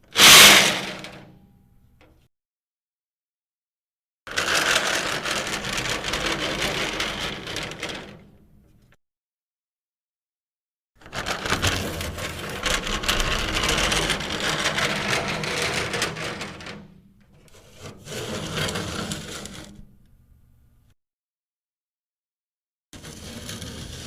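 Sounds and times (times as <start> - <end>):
box scraping across floor: 17.6 - 19.8, 23.0 - 24.0.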